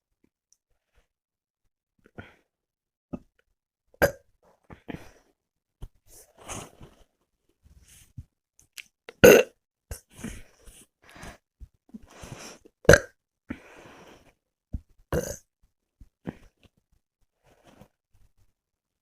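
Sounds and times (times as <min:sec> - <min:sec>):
person burping: 0:04.0 - 0:04.2, 0:09.1 - 0:10.1, 0:12.8 - 0:13.2, 0:15.1 - 0:15.5.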